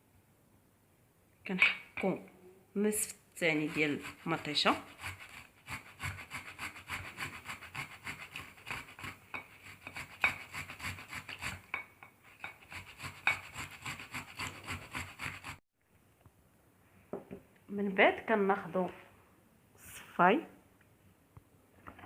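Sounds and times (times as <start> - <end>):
tomato rasping on grater: 3.4 - 11.7, 12.3 - 15.6.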